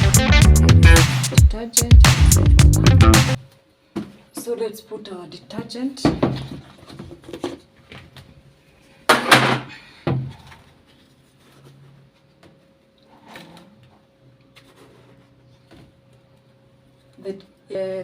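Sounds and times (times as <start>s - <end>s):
rustling scrape: 10.8s - 12.2s, 14.6s - 15.5s.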